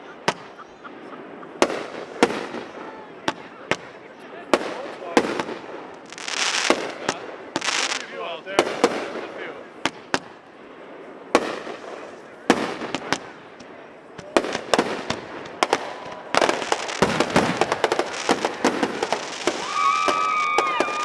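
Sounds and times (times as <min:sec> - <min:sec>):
firework whistling: 0:00.0 - 0:03.6, 0:04.6 - 0:13.6, 0:14.3 - 0:21.0
firework bangs and crackling: 0:00.0 - 0:21.0.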